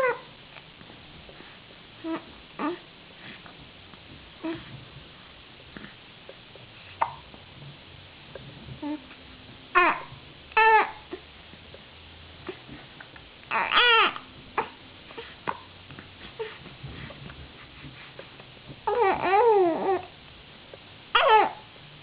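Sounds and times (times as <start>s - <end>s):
baby fussing and crying: 0.0s - 0.3s, 2.0s - 2.9s, 9.7s - 11.3s, 13.5s - 17.1s, 18.2s - 20.1s, 21.2s - 21.7s.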